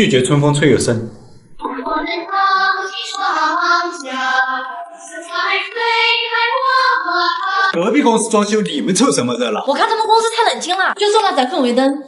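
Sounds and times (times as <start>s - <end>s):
high child-like voice singing: 1.6s - 7.9s.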